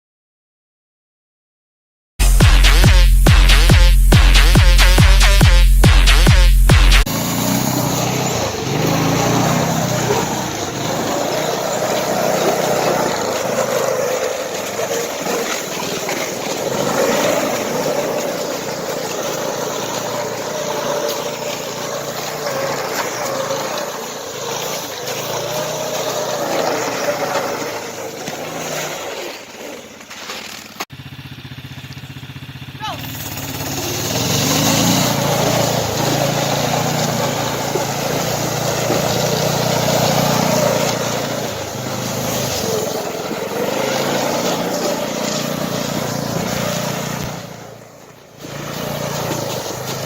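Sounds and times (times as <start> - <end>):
electronic music: 2.2 - 7.1
snowmobile engine revving: 2.2 - 50.0.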